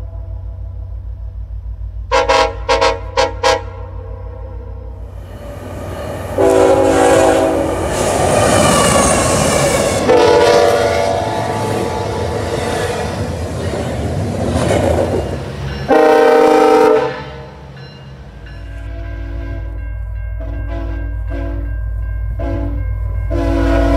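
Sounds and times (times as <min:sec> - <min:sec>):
train rumbling and clattering: 0:00.0 - 0:23.9
locomotive air horn chord: 0:02.1 - 0:04.8, 0:06.4 - 0:07.9, 0:09.9 - 0:12.2, 0:15.9 - 0:17.6, 0:18.8 - 0:19.8, 0:20.4 - 0:21.7, 0:22.4 - 0:23.9.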